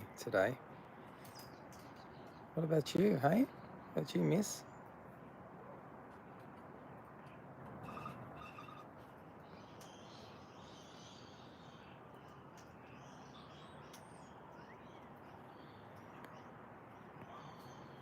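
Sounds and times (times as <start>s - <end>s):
outdoor background hiss: 0.0s - 18.0s
faint bird calls and chirps: 7.3s - 18.0s.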